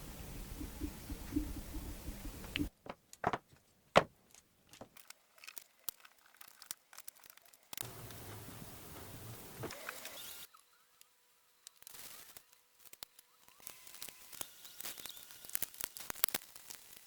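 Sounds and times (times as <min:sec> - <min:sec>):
steady hiss: 0:00.0 - 0:02.7
knock: 0:03.2 - 0:03.4.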